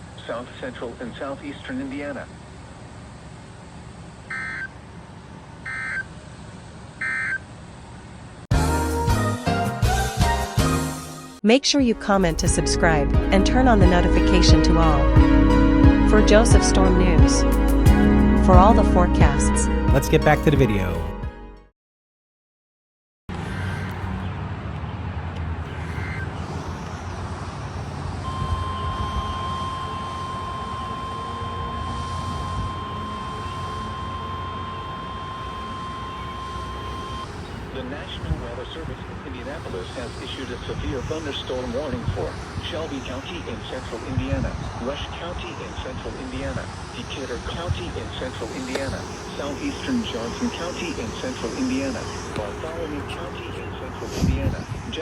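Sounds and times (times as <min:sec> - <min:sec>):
music: 0:08.5 - 0:21.7
radio static rumble and hiss: 0:25.9 - 0:55.0
buzzy digital chirps: 0:26.0 - 0:55.0
faint short beeps: 0:28.2 - 0:37.3
steady high alert tone: 0:28.2 - 0:38.0, 0:46.2 - 0:55.0.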